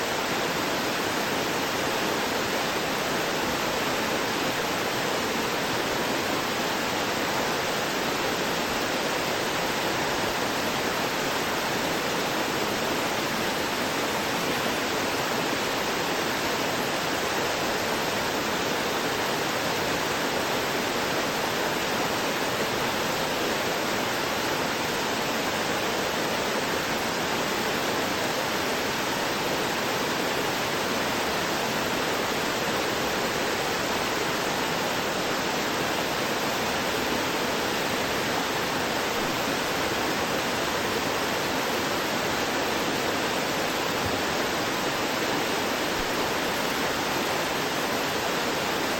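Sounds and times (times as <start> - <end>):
stream gurgling over rocks: 0.0 - 48.9.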